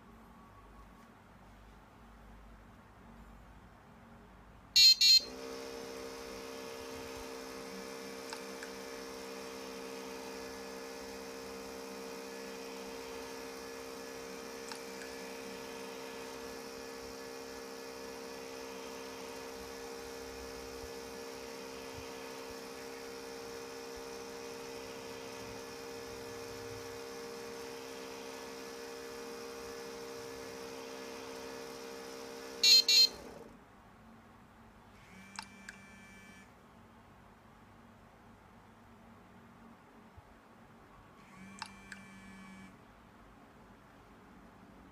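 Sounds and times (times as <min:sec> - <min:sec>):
electronic buzzer double beep: 0:04.8 - 0:05.3, 0:32.6 - 0:33.2
small electric motor humming: 0:05.3 - 0:33.4, 0:35.0 - 0:36.5, 0:41.2 - 0:42.7.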